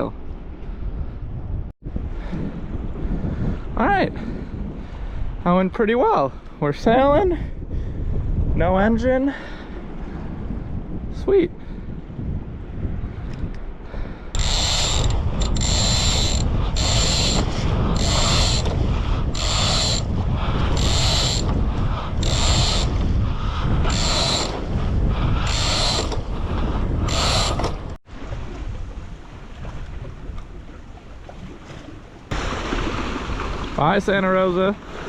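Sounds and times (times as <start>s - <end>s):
wind: 0.0s - 35.0s
line whirring through deck hardware: 14.4s - 23.1s, 23.7s - 26.4s, 27.0s - 28.0s
water rushing: 27.1s - 35.0s.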